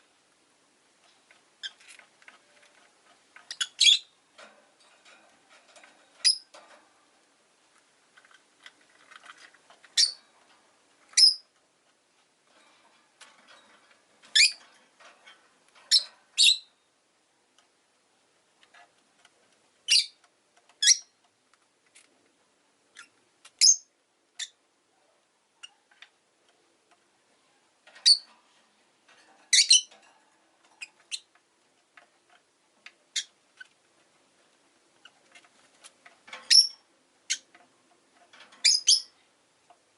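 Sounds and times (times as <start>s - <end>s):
lovebirds chirping: 3.4s - 4.2s, 9.9s - 10.2s, 11.1s - 11.5s, 14.3s - 14.6s, 15.9s - 16.8s, 19.9s - 20.2s, 20.8s - 21.2s, 23.0s - 24.6s, 29.5s - 29.9s, 36.4s - 37.5s.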